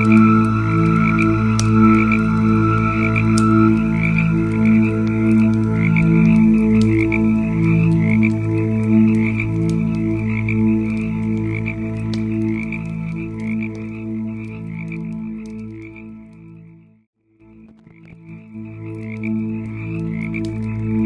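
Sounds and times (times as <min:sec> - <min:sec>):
pulsing low hum: 0:00.0 - 0:13.9
campfire crackling and popping: 0:00.0 - 0:15.9, 0:17.6 - 0:19.3.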